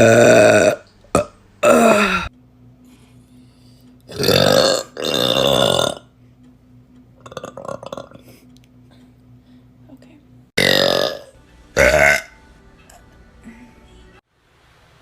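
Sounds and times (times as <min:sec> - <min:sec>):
girl burping: 0:00.0 - 0:02.3, 0:04.1 - 0:06.0, 0:10.6 - 0:12.3.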